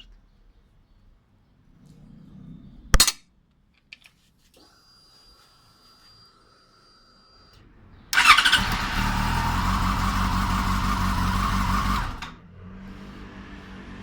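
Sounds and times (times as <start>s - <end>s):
motorcycle engine starting and idling: 8.1s - 14.0s.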